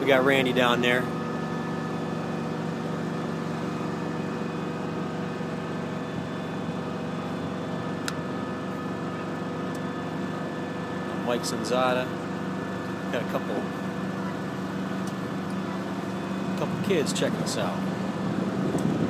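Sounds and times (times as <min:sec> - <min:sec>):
engine and hydraulic drone: 0:00.0 - 0:19.0.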